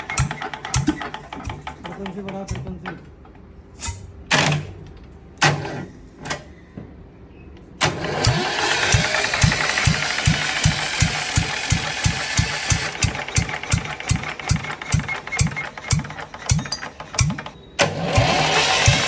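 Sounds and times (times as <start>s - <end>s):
diesel engine thumping: 7.8s - 19.0s.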